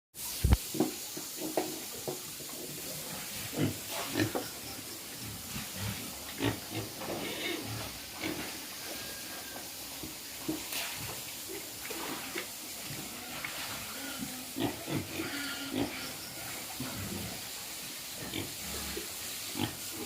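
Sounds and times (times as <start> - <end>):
steady hiss: 0.2 - 20.0
pigs grunting: 3.0 - 9.6, 11.5 - 17.5, 18.2 - 20.0.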